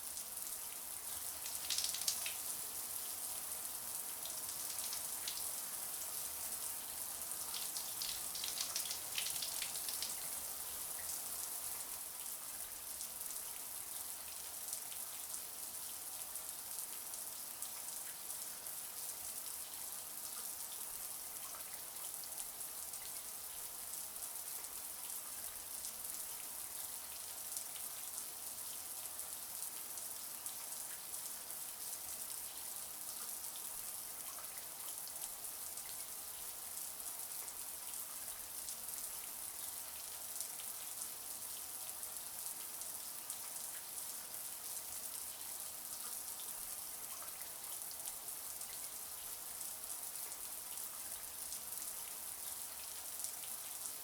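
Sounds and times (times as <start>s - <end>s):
shower water running: 1.4s - 2.4s, 7.4s - 10.2s.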